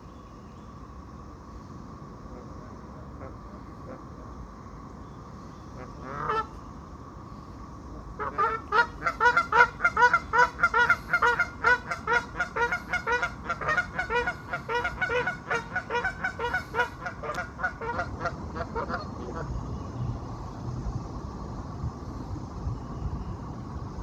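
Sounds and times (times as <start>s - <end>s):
geese honking: 5.7s - 6.6s, 8.1s - 19.5s.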